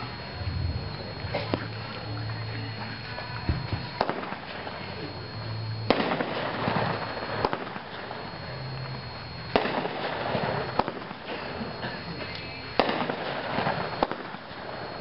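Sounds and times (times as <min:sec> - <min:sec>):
firework bangs: 0:03.5 - 0:04.8, 0:05.9 - 0:08.2, 0:09.5 - 0:11.6, 0:12.8 - 0:14.8.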